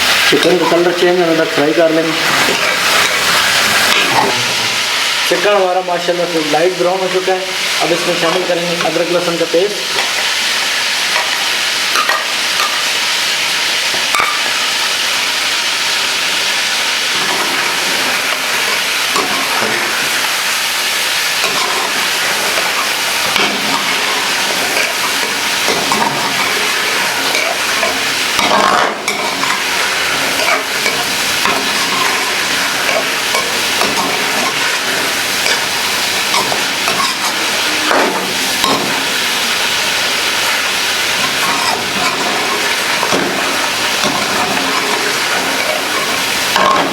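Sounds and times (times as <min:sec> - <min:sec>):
chicken sizzling in hot oil: 0:00.0 - 0:46.9
stirring scrapes in pot: 0:21.4 - 0:37.4, 0:41.2 - 0:46.9.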